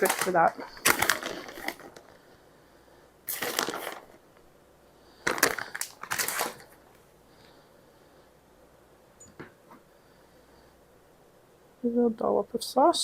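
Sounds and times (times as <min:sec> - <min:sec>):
crunchy scraping of food and utensils: 0:00.0 - 0:02.2, 0:03.3 - 0:04.2, 0:05.3 - 0:06.8.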